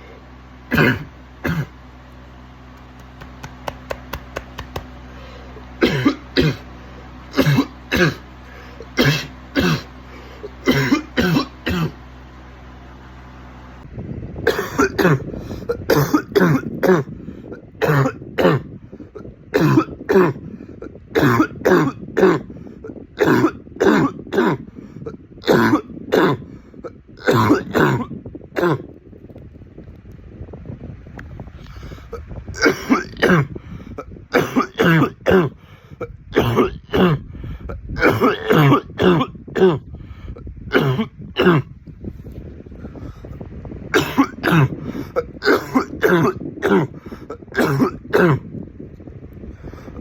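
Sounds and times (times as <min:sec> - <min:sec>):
man's hoarse barking cough: 0:00.7 - 0:01.8, 0:05.8 - 0:06.7, 0:07.3 - 0:12.0, 0:14.5 - 0:17.1, 0:17.8 - 0:18.7, 0:19.5 - 0:20.4, 0:21.1 - 0:22.5, 0:23.2 - 0:24.7, 0:25.4 - 0:28.9, 0:32.1 - 0:37.2, 0:38.0 - 0:39.9, 0:40.7 - 0:41.7, 0:43.9 - 0:48.5.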